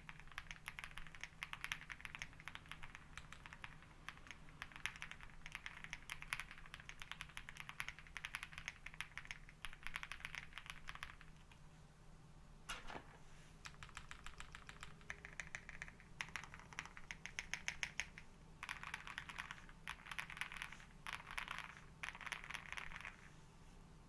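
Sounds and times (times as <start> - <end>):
mechanical keyboard typing: 0.0 - 11.4, 13.6 - 23.3.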